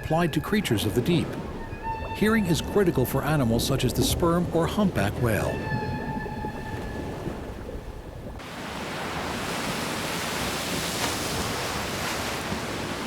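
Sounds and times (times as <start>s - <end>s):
ocean water rushing: 0.0s - 13.0s.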